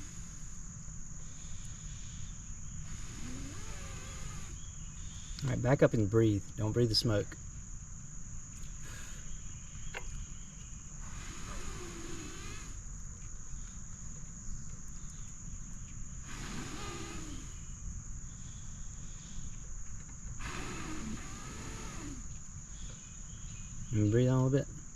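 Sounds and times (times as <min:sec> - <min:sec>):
breathy blowing on tinder: 0:00.0 - 0:00.8, 0:01.4 - 0:04.7, 0:11.0 - 0:12.8, 0:16.2 - 0:17.8, 0:20.4 - 0:22.3
insects chirring: 0:00.0 - 0:24.9.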